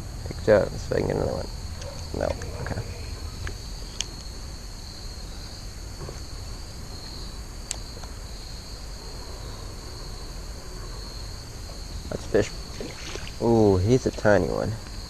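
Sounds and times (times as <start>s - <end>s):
insects buzzing: 0.0s - 15.0s.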